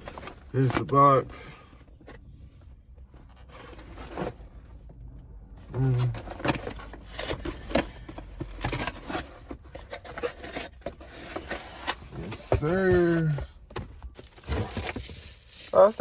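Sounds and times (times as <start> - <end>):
cardboard box crackling and rustling: 14.1 - 16.0.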